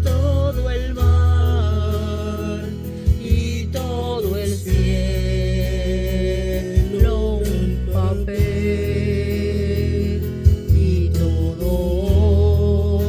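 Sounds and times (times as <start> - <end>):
person singing long sliding notes: 0.0 - 13.0
steady bass accompaniment: 0.0 - 13.0.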